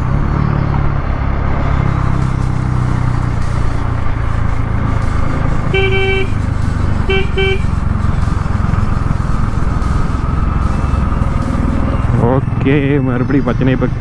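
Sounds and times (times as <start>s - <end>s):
motorcycle engine running: 0.0s - 14.0s
vehicle horn honking: 5.6s - 7.9s.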